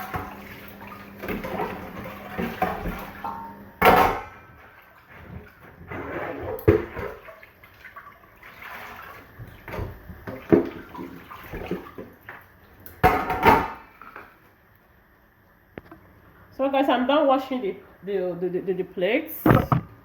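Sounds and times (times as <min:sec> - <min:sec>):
water splashing and running: 0:00.0 - 0:12.5.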